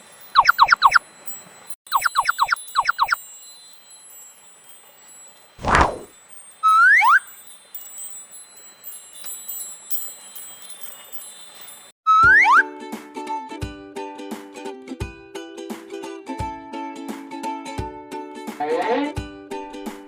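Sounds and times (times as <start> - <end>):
wind chimes ringing: 0.0 - 12.0
whooshing burst: 5.6 - 6.1.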